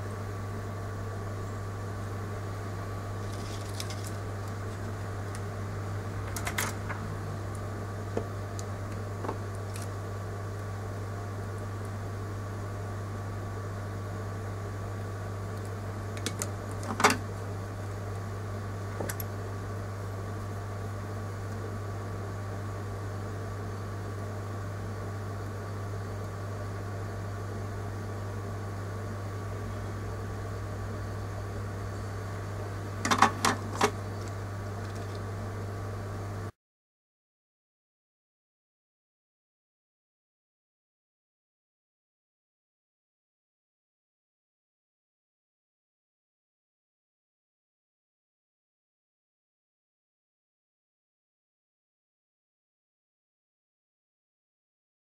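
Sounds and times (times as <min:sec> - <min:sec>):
steady low hum: 0:00.0 - 0:36.6.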